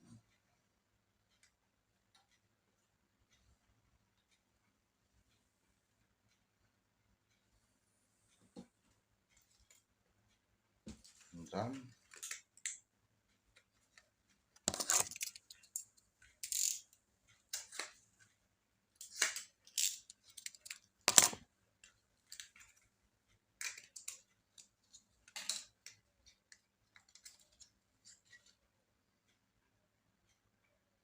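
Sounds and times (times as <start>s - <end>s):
laptop parts clicking and scraping: 13.8s - 16.9s, 19.0s - 22.8s, 23.6s - 28.6s.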